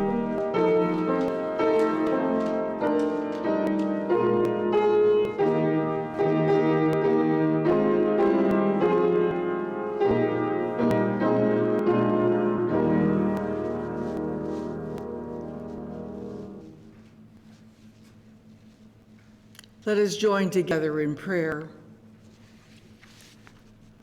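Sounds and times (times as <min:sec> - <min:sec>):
piano playing slow chords: 0:00.0 - 0:17.9.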